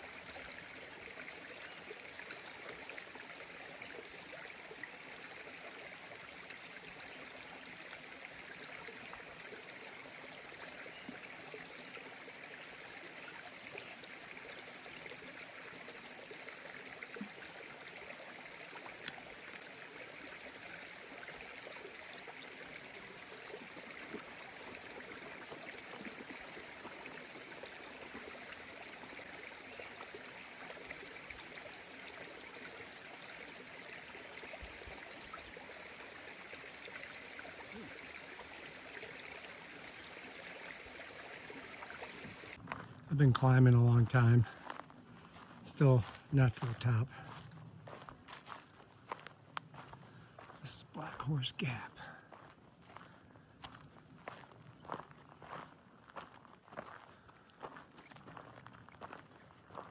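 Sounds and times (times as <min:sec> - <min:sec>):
creek water running: 0:00.0 - 0:59.9.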